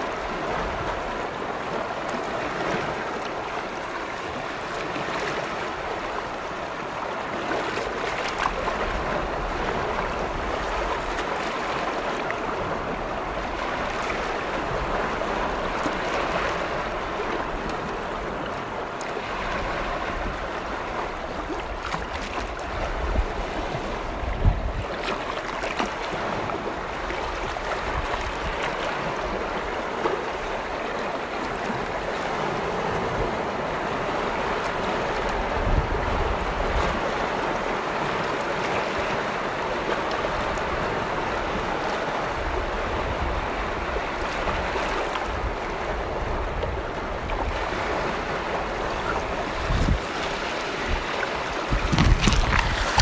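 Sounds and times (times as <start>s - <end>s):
lake waves washing on shore: 0.0s - 53.0s
low thumps of waves: 42.4s - 53.0s.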